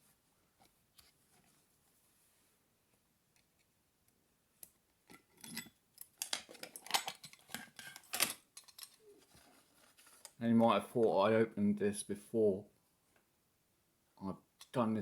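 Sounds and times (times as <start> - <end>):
lock-picking clicks and scrapes: 4.6 - 9.0.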